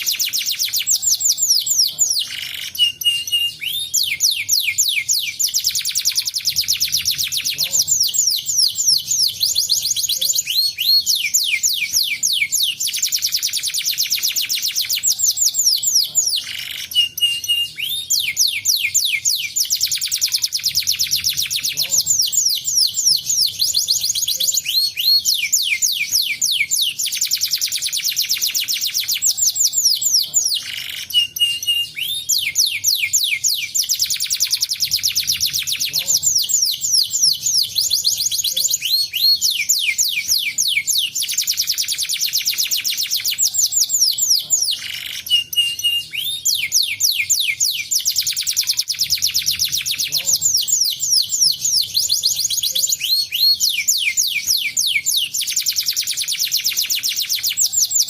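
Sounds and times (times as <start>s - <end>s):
canary trilling: 0.0s - 58.0s.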